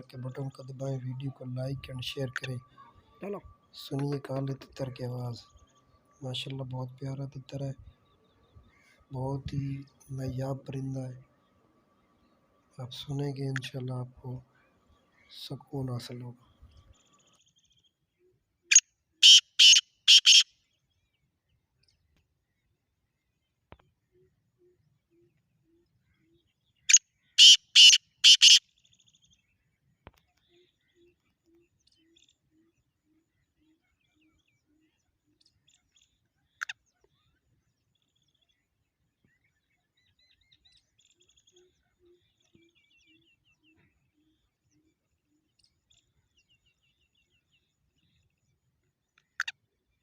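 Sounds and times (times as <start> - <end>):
bird low evenly spaced notes: 0.0 - 18.4
bird harsh call: 18.7 - 20.5, 26.9 - 28.6.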